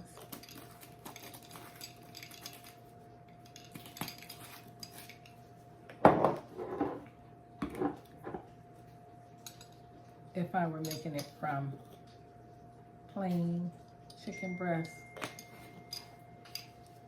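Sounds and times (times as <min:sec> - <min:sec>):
utensils and dishes clinking: 0:00.0 - 0:02.8, 0:09.4 - 0:09.9, 0:10.8 - 0:12.1, 0:14.0 - 0:17.0.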